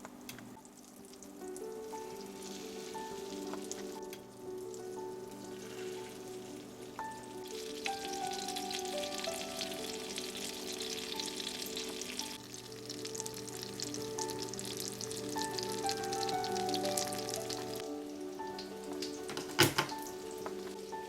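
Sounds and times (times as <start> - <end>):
soft background music: 0.0 - 21.0
food sizzling in oil: 0.7 - 21.0.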